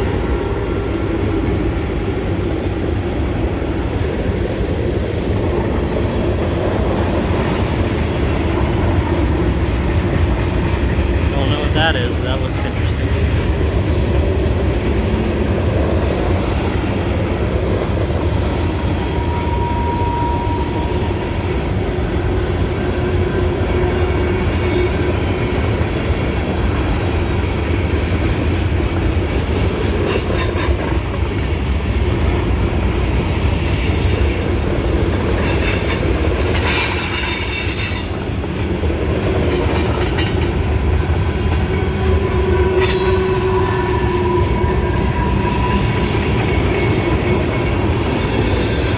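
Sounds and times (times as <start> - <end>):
train wheels rumbling on rails: 0.0 - 48.9
high-pitched wheel squeals: 19.1 - 21.2, 42.5 - 48.9
wheels clicking over rail joints: 25.2 - 43.4.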